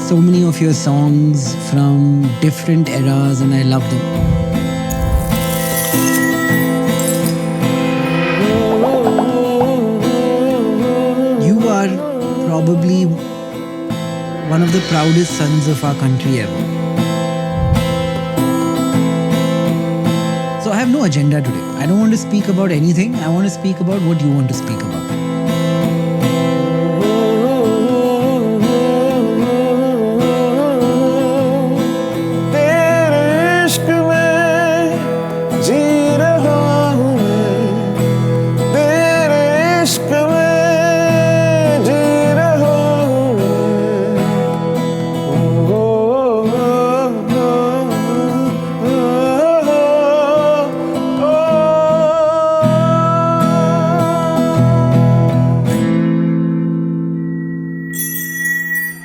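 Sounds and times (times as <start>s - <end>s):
acoustic guitar music: 0.0s - 59.0s
wavering gliding melody: 4.2s - 10.5s, 57.2s - 59.0s
sustained tones: 4.2s - 10.8s, 57.0s - 59.0s.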